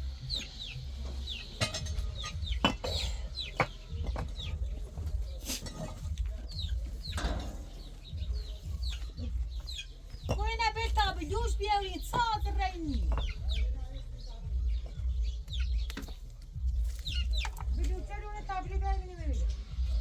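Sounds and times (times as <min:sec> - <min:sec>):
birds chirping: 0:00.0 - 0:20.0
low rumble: 0:06.0 - 0:20.0.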